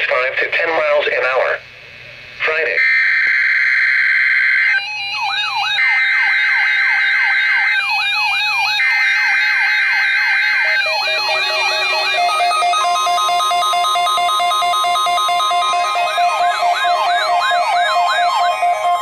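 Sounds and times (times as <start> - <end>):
harsh buzzing data bursts: 2.4 - 19.0
rising siren-like whoop: 3.0 - 19.0.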